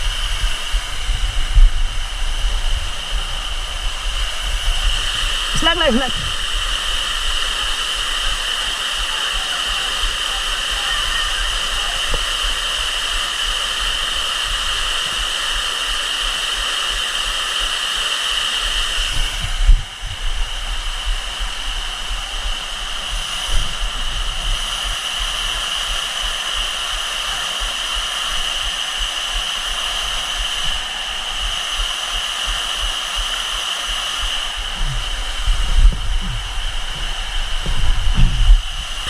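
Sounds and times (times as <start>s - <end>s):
waterfall rushing: 0.0s - 39.0s.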